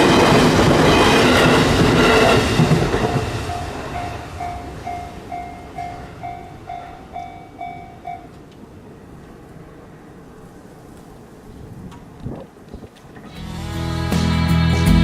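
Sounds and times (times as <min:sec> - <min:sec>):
passing train rumble: 0:00.0 - 0:14.1
level crossing warning bell: 0:02.0 - 0:08.5.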